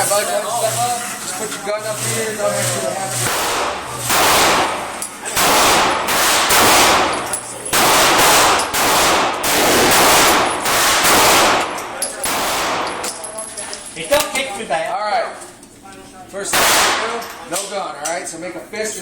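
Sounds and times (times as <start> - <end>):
rifle shots with echo: 3.3 - 13.0, 16.5 - 17.2.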